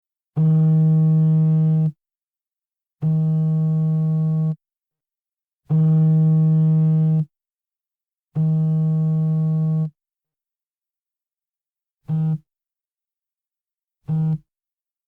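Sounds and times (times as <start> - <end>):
mobile phone vibrating: 14.1 - 14.5.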